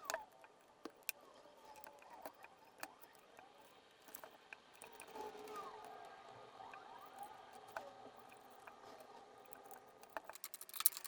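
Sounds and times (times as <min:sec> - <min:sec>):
plastic trim panels clicking: 0:10.2 - 0:11.0.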